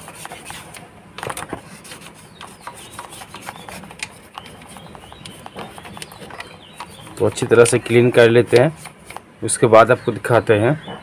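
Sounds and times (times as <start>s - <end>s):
toothbrush scrubbing brake drum: 1.7s - 8.8s.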